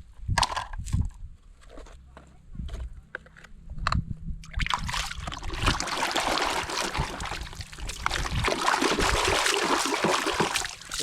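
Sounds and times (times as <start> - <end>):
water splashing and trickling: 4.4 - 11.0.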